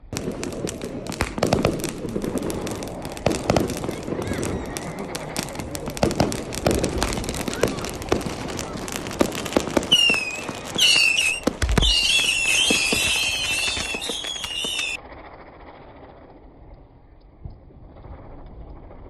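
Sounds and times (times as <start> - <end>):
firecrackers crackling pops: 0.0 - 15.0
whistling fireworks: 0.0 - 16.4.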